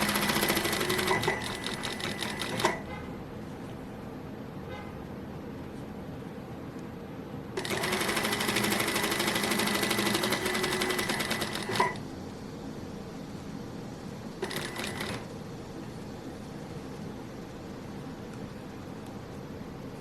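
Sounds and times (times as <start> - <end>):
sewing machine stitching: 0.0 - 2.8, 7.6 - 12.0, 14.4 - 15.3.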